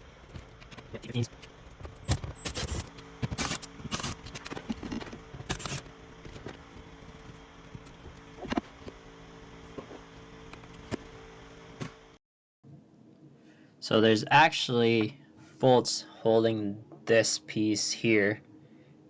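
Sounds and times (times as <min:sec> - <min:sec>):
steady low hum: 0:00.0 - 0:14.0
sharp clicks: 0:00.4 - 0:05.9.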